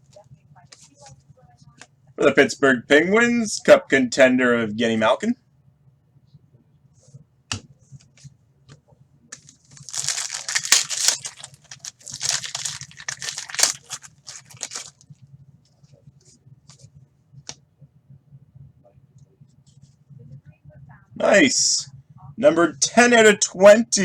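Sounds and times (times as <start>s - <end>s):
card wrapper tearing and crinkling: 9.4s - 15.0s
cards clicking: 9.4s - 15.0s.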